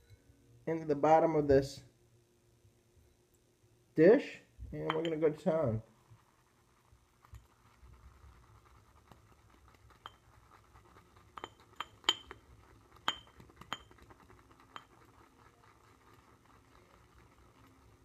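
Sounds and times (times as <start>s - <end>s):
brush clinking against ceramic bowl: 4.8s - 5.4s, 10.0s - 10.4s, 11.3s - 15.2s
brush whipping lather in bowl: 4.8s - 18.0s.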